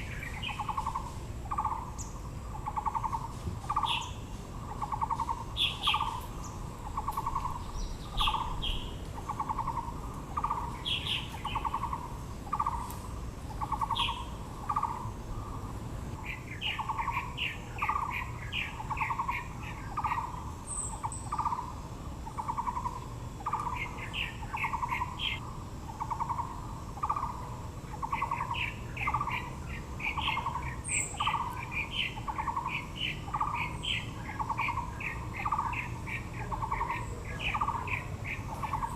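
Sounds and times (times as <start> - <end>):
birds chirping: 0.0 - 38.9.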